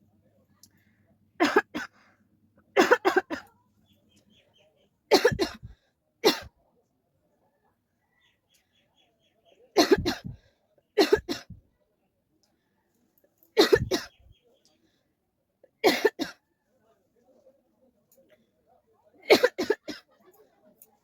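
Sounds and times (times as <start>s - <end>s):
woman coughing: 1.4s - 1.9s, 2.8s - 3.5s, 5.1s - 5.7s, 6.3s - 6.5s, 9.8s - 10.4s, 11.0s - 11.6s, 13.6s - 14.1s, 15.8s - 16.3s, 19.3s - 20.0s.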